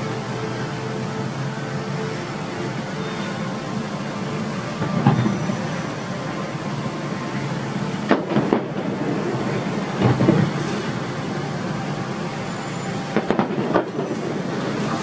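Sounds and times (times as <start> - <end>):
street traffic noise: 0.0 - 15.0
distant fireworks bangs: 8.0 - 9.3, 13.1 - 14.9.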